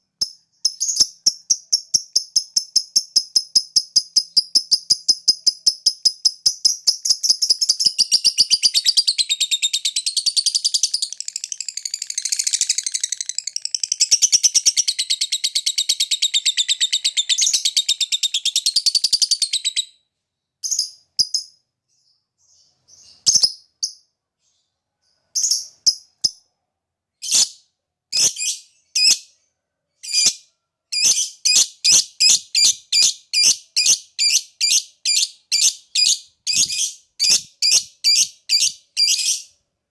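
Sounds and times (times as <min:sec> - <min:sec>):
short bird chirps: 0:27.1 - 0:39.6
lovebird high-pitched trill: 0:30.0 - 0:39.5.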